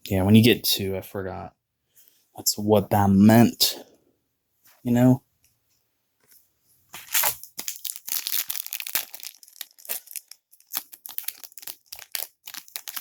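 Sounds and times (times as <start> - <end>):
wrapper tearing and crinkling: 7.0 - 13.0.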